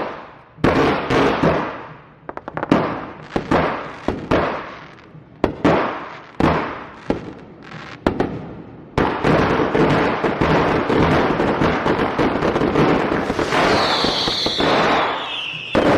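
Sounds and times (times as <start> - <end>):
crackling fireworks: 0.0 - 15.9
fireworks bangs: 8.0 - 15.9
firework whistle: 12.8 - 15.9.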